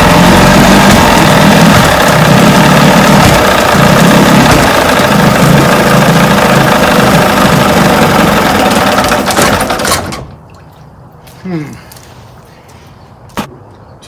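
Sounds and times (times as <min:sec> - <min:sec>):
outboard motor running: 0:00.0 - 0:10.1.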